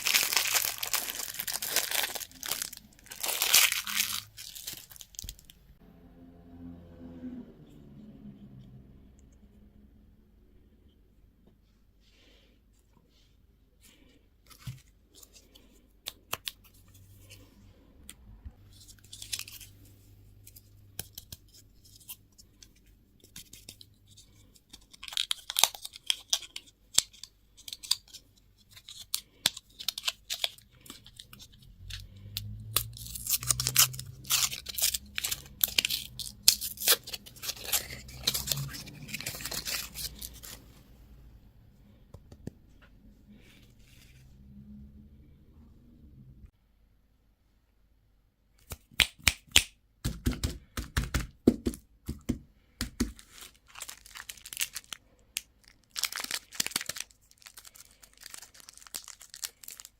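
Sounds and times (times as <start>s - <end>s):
plastic packaging crinkling and tearing: 0.0s - 5.6s, 18.7s - 19.7s, 23.3s - 40.6s, 53.0s - 59.9s.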